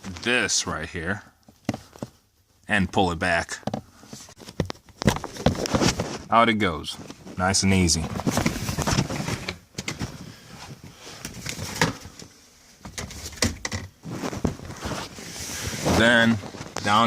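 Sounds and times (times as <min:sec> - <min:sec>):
rustling: 0:03.8 - 0:17.0.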